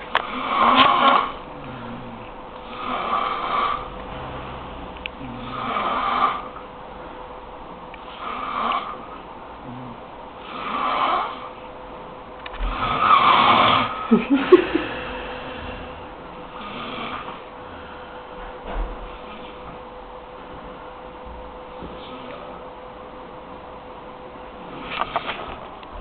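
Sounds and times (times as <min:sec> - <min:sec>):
heavy snoring: 0:00.0 - 0:06.6, 0:08.0 - 0:11.6, 0:12.6 - 0:18.2.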